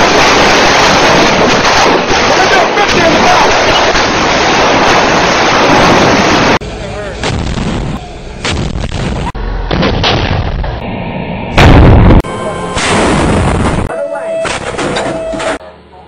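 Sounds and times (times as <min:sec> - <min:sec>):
gunfire: 0:00.0 - 0:06.5
explosion blasts: 0:00.0 - 0:06.6, 0:07.2 - 0:15.5.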